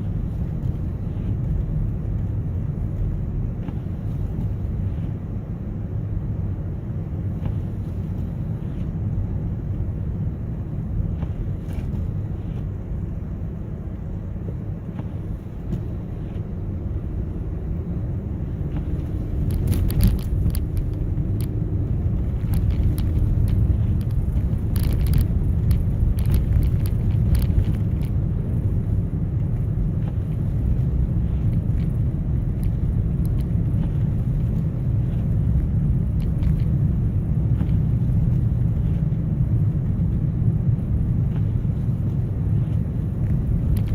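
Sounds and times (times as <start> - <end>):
car road and engine rumble: 0.0 - 43.9
sharp clicks and ticks: 18.8 - 28.2.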